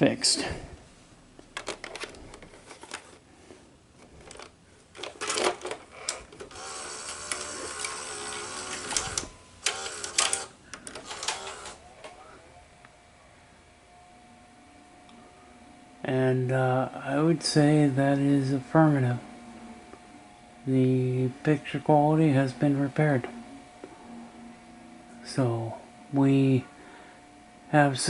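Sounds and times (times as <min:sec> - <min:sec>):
video deck clicks and clunks: 0:01.4 - 0:03.1
motor whirring: 0:05.9 - 0:11.8.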